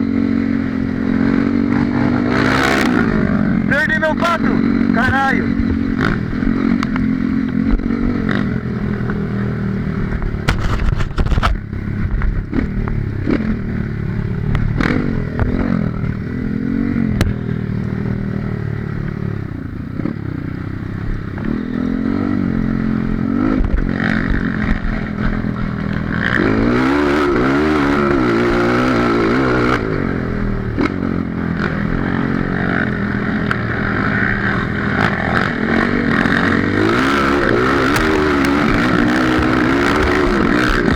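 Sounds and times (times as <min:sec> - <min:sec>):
dirt bike engine revving: 0:00.0 - 0:40.9
bike clattering and scraping: 0:10.0 - 0:12.4.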